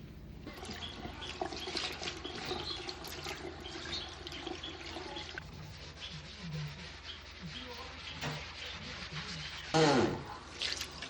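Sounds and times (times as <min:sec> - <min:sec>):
water running into a sink: 0:00.5 - 0:05.4, 0:10.4 - 0:11.0.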